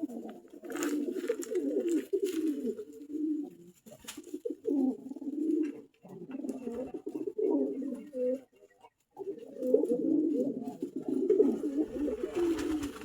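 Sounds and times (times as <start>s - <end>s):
pigeons cooing: 0.0s - 13.0s.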